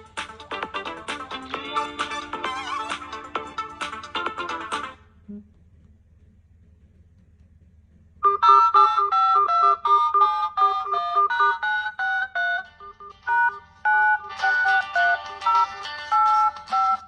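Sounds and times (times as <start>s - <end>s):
busier electronic sound layer: 8.2s - 17.0s
smartphone ringtone melody: 8.2s - 17.0s.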